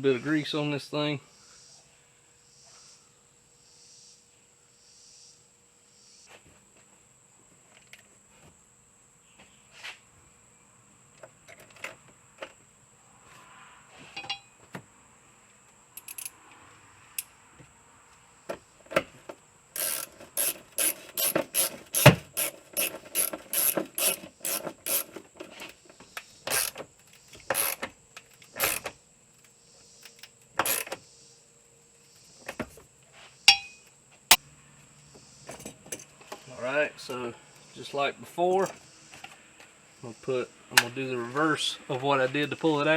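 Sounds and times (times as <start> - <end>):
ratchet wrench clicking: 16.0 - 16.4, 19.8 - 25.2, 26.2 - 31.0.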